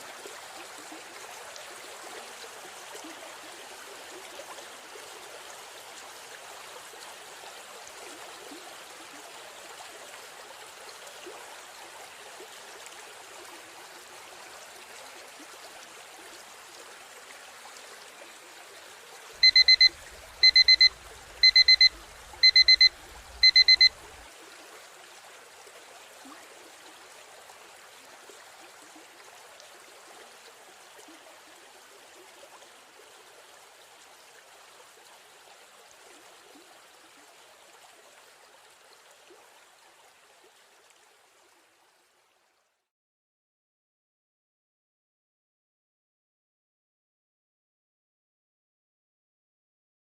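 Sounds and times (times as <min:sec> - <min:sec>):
river stream flowing: 0:00.0 - 0:42.0
timer alarm beeping: 0:19.4 - 0:24.1.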